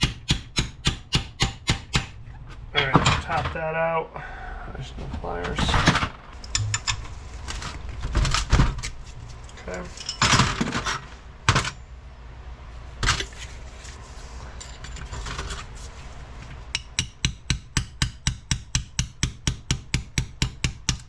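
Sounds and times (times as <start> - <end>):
hammer striking steel punch: 0.0 - 2.2, 16.7 - 21.0.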